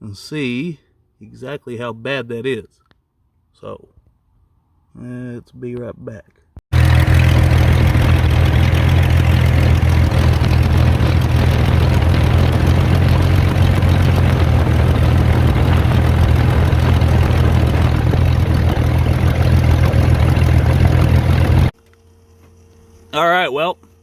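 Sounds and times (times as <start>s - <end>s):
car engine idling: 6.8s - 21.7s.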